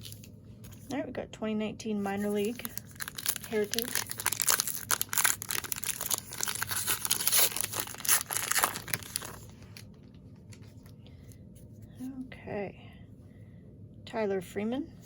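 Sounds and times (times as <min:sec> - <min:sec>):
card pack wrapper tearing and crinkling: 0:02.4 - 0:09.9.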